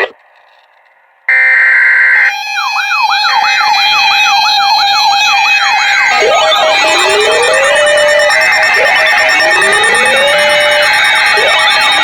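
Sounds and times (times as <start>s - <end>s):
electronic siren yelping: 1.3s - 12.0s
rising siren wails: 2.2s - 12.0s
broken beeping tone: 6.0s - 12.0s
steady alert tone: 6.0s - 12.0s.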